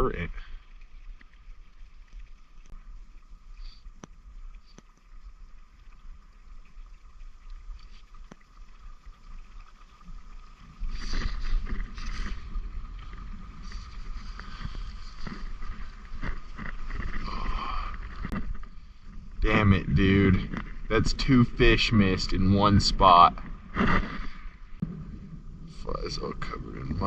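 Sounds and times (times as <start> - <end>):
creek water running: 0.0 - 27.0
faint clicks: 0.6 - 19.1
low microphone rumble: 11.0 - 27.0.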